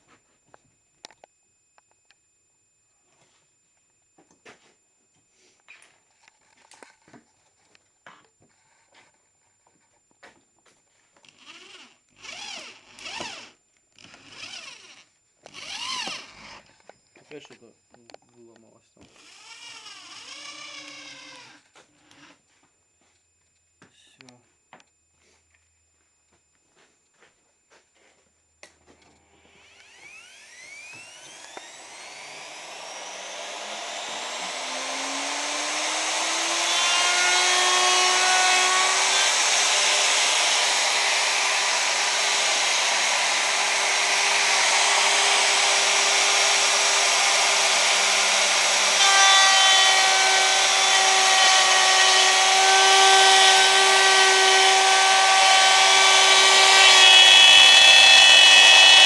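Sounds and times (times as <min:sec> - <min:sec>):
wood router motor whine: 0:08.4 - 0:17.6, 0:19.0 - 0:22.4, 0:29.3 - 0:59.0.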